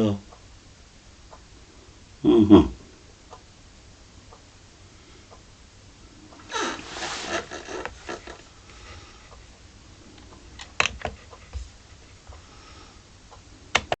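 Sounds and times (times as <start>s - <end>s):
small clicks and knocks: 10.2s - 11.7s, 13.7s - 14.0s.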